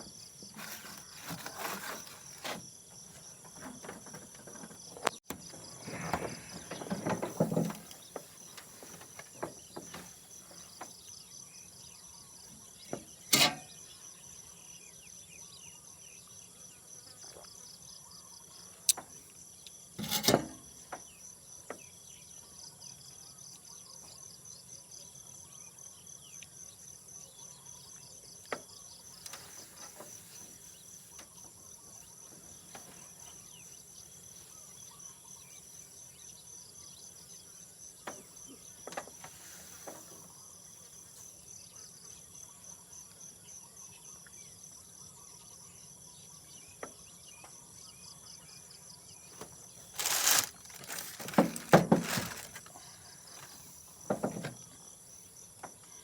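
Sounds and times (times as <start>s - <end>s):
crickets and night insects trilling: 0.0s - 56.0s
clattering and rustling: 0.4s - 11.0s, 20.0s - 20.6s, 49.9s - 54.6s.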